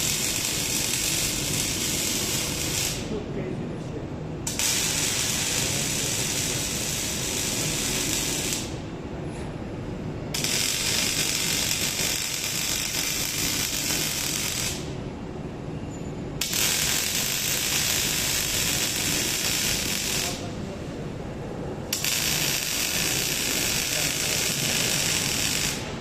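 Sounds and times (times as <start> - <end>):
welding arc crackling and hissing: 0.0 - 3.2, 4.5 - 8.8, 10.3 - 15.0, 16.4 - 20.5, 21.9 - 26.0.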